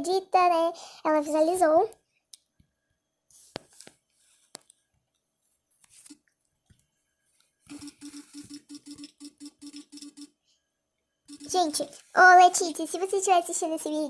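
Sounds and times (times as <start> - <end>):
short vibration buzz: 7.7 - 10.3, 11.3 - 11.6.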